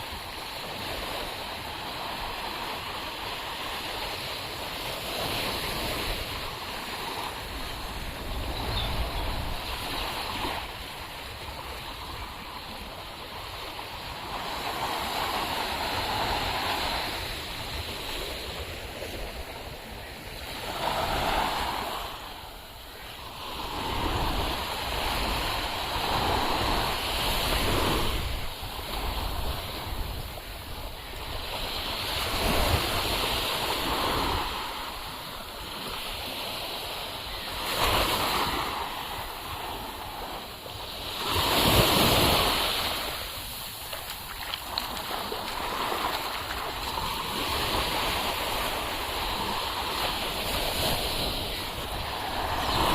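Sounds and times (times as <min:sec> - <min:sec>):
wind rumbling on microphone: 0:04.8 - 0:36.8
sea surf washing onto beach: 0:37.5 - 0:52.9.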